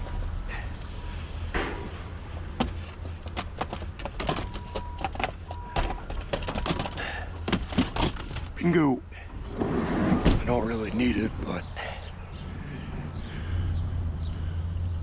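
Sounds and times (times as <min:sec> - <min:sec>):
items clicking and knocking: 0:02.6 - 0:08.6.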